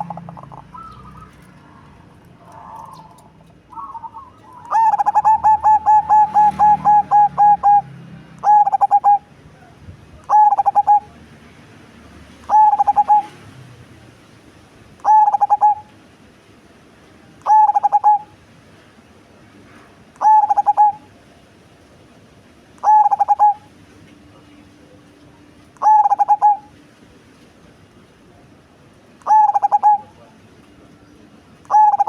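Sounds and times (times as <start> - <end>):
dove cooing: 0.0 - 9.3, 10.2 - 11.2, 12.4 - 13.4, 15.0 - 15.9, 17.4 - 18.4, 20.2 - 21.1, 22.8 - 23.7, 25.8 - 26.7, 29.2 - 30.3, 31.6 - 32.0.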